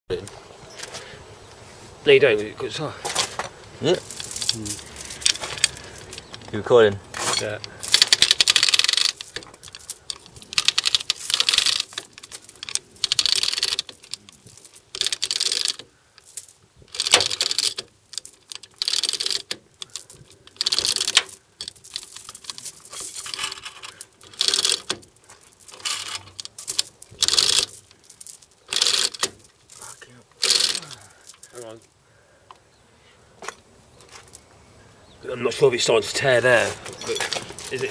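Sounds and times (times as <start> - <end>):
ratchet clicking: 7.2 - 31.5.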